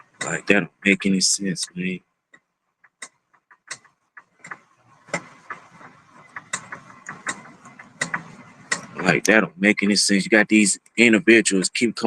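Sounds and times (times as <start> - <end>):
sharp clicks and taps: 0.0 - 9.4.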